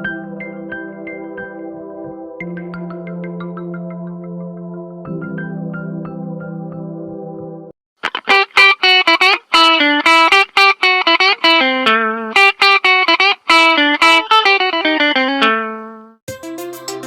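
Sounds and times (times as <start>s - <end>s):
plucked guitar-like ringtone: 8.0s - 16.1s.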